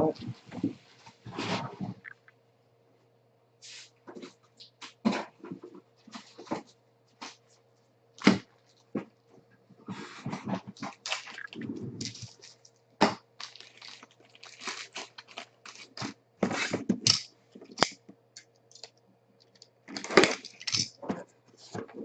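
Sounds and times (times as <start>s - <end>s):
packaging tearing: 10.9s - 11.4s, 13.4s - 16.1s, 19.9s - 20.9s.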